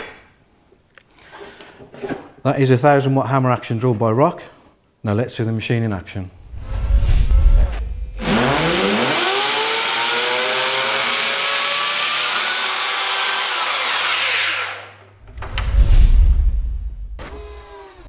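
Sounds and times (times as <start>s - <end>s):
drill motor whine: 8.1s - 14.9s, 17.2s - 18.0s.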